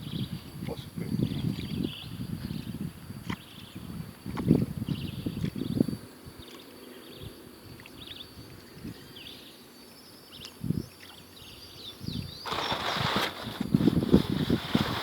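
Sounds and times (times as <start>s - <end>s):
small birds chirping: 0.0s - 3.8s, 4.9s - 13.6s
broad rushing noise: 12.5s - 15.0s.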